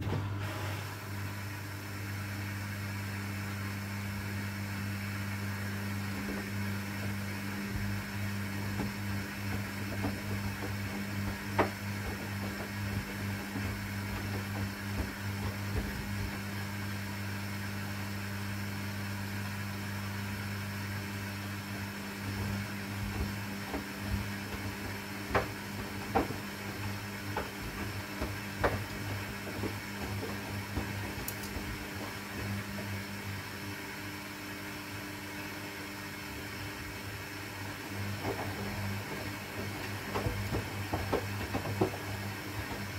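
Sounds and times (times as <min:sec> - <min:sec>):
washing machine hum: 0:00.0 - 0:42.9
washing machine clicks: 0:06.1 - 0:16.8, 0:22.1 - 0:33.6, 0:37.9 - 0:42.9.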